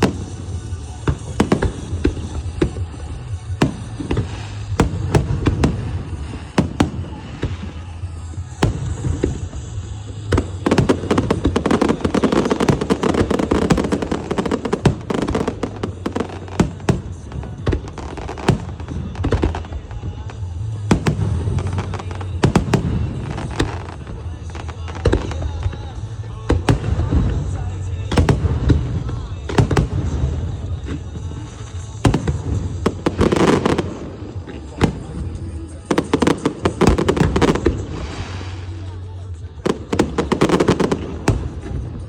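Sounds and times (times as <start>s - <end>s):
fireworks bangs and crackling: 0.0s - 42.0s.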